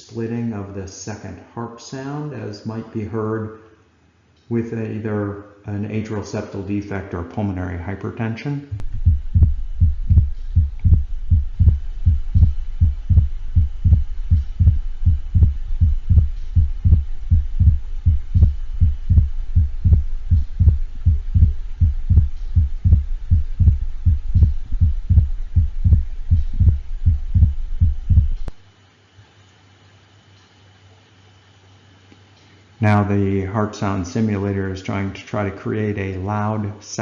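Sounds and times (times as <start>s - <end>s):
heartbeat low thumps: 8.7s - 28.6s.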